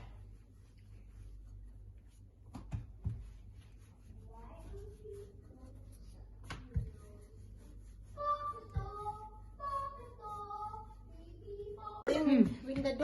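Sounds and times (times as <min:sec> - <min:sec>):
child singing: 0:08.0 - 0:12.1.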